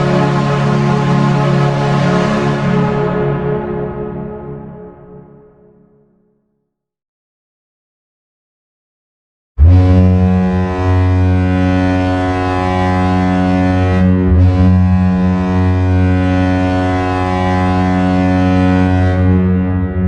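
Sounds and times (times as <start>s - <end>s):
deep goal horn blast: 0.0s - 5.8s, 9.6s - 20.0s.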